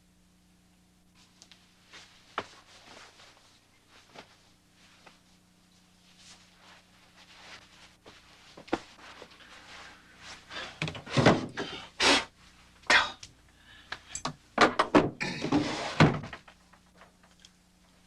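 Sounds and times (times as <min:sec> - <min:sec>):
faint low hum: 0:00.0 - 0:18.0
knocks and thuds: 0:10.8 - 0:11.8, 0:14.6 - 0:16.6.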